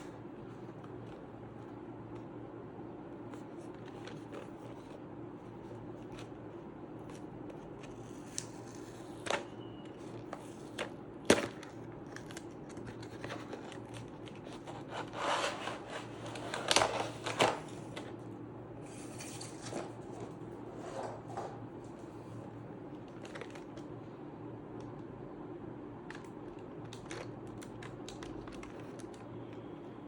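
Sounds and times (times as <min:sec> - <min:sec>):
keycaps scraping and clicking: 0:07.0 - 0:18.1, 0:26.1 - 0:29.7
mechanical keyboard clicks and rubbing: 0:26.1 - 0:29.7.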